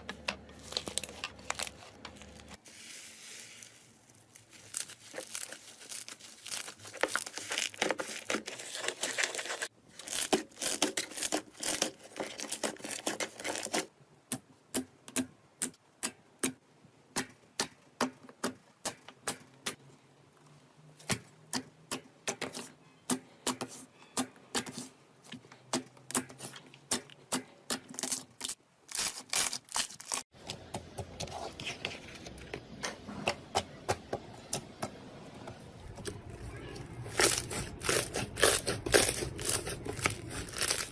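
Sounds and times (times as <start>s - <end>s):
slime crackling and popping: 37.1s - 40.9s.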